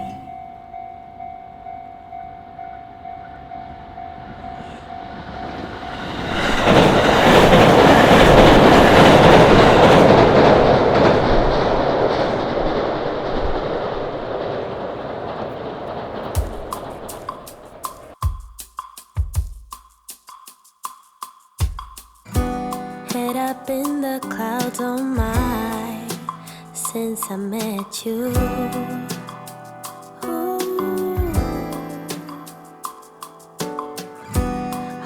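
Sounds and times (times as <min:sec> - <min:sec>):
train wheels rumbling on rails: 0:04.3 - 0:18.2.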